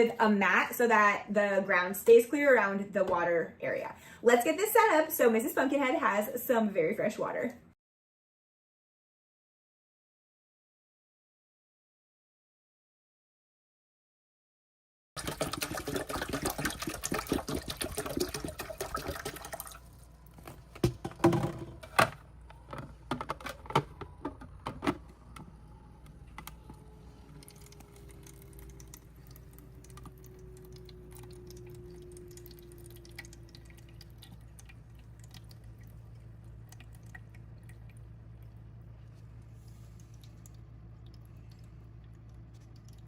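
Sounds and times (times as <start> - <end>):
water trickling: 15.2 - 20.4, 26.8 - 43.0
water pouring into tank: 15.2 - 21.4, 26.9 - 43.0
pump hum: 15.2 - 43.0
plastic clicks and knocks: 20.7 - 25.5.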